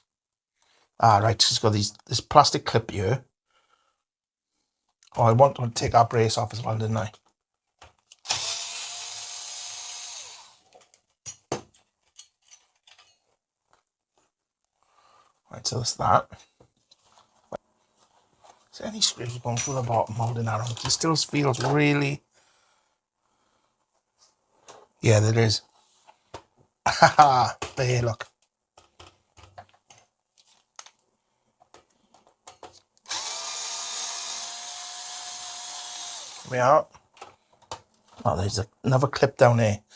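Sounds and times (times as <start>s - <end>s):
electric screwdriver running: 8.2s - 10.6s, 33.1s - 36.6s
cordless power driver whine: 8.3s - 10.6s, 33.1s - 36.5s.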